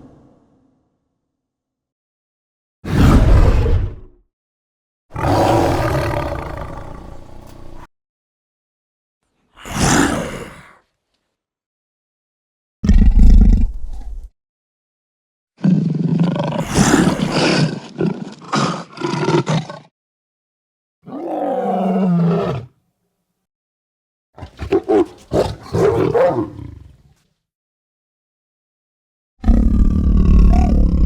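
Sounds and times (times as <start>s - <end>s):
lion roaring: 5.2s - 7.9s, 15.6s - 19.9s, 21.1s - 22.7s, 24.4s - 27.0s, 29.4s - 31.0s.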